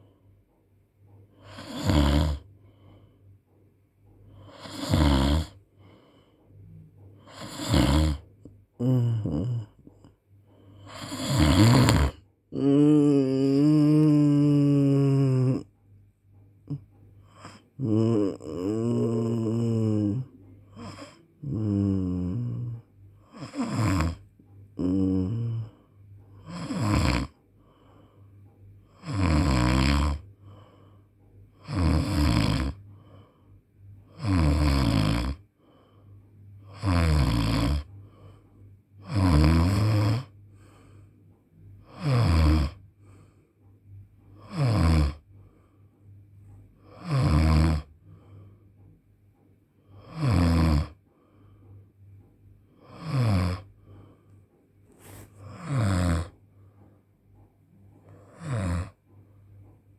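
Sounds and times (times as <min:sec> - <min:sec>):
faint steady hum: 0:00.0 - 0:59.9
person snoring: 0:01.3 - 0:02.5, 0:04.3 - 0:06.1, 0:07.2 - 0:09.8, 0:10.7 - 0:15.7, 0:16.7 - 0:24.2, 0:24.8 - 0:27.4, 0:28.9 - 0:30.8, 0:31.6 - 0:33.3, 0:34.1 - 0:35.5, 0:36.6 - 0:38.4, 0:39.0 - 0:41.0, 0:41.8 - 0:43.4, 0:44.4 - 0:45.2, 0:46.8 - 0:48.5, 0:49.8 - 0:51.0, 0:52.7 - 0:54.2, 0:54.9 - 0:56.4, 0:58.0 - 0:59.0.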